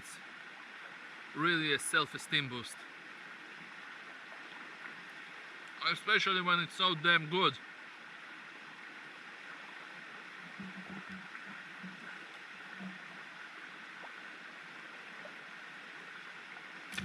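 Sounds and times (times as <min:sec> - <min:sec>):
river water rushing: 0:00.0 - 0:17.0.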